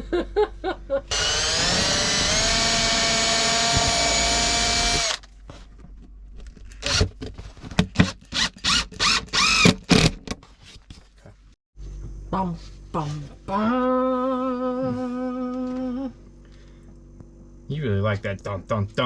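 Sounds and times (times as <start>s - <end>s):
power drill whining: 1.1s - 5.2s, 6.8s - 7.1s, 8.3s - 10.2s.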